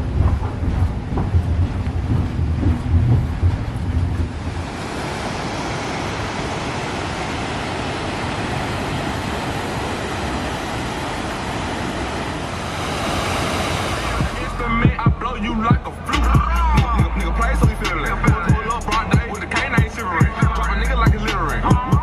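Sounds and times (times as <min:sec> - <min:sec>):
low rumble with knocks: 0:00.0 - 0:04.8
ocean surf: 0:00.0 - 0:16.9, 0:17.9 - 0:20.5.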